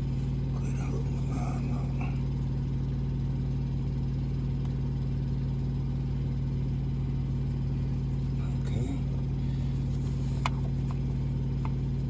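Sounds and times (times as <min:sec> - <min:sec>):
truck engine idling: 0:00.0 - 0:12.0.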